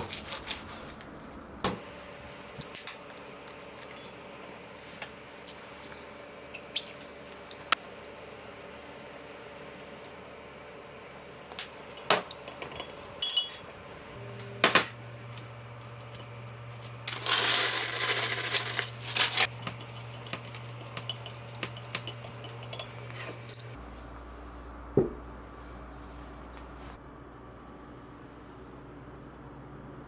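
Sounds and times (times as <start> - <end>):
low steady hum: 0.0 - 30.0
rustling and scraping: 16.6 - 19.5.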